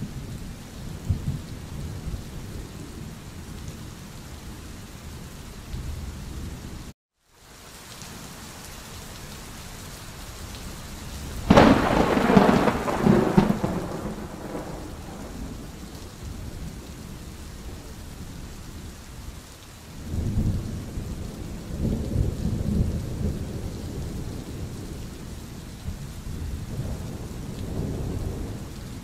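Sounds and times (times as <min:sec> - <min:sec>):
steady rain: 0:00.0 - 0:29.0
thunderclap rumbling: 0:11.4 - 0:17.9, 0:20.0 - 0:29.0.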